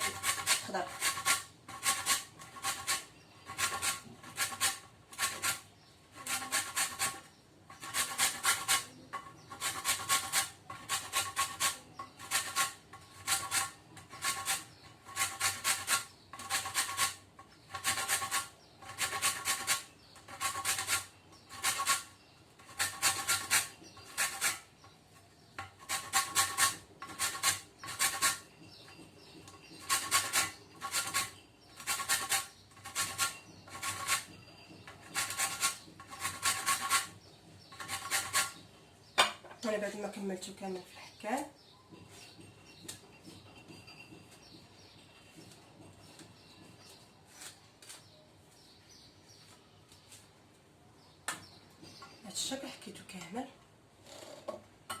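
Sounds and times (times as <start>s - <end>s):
lemon rind rasping on a grater: 0.0s - 24.9s, 25.8s - 38.6s.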